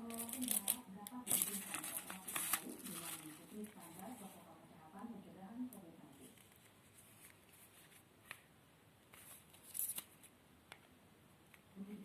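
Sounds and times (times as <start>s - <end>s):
plastic packaging crinkling: 0.0s - 4.3s, 9.1s - 10.3s.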